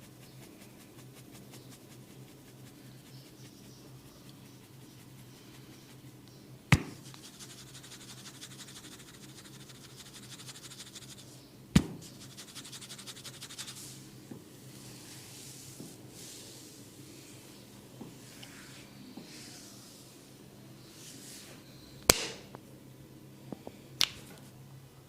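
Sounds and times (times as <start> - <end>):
fine scratching in hair: 0.0 - 6.2, 7.0 - 11.4, 12.0 - 14.0
soft rubbing of scalp: 0.0 - 6.3, 7.0 - 11.4, 12.0 - 17.5.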